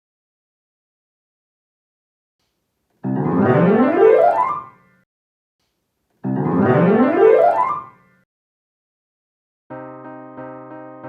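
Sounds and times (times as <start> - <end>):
piano run over low chord: 9.7 - 11.0.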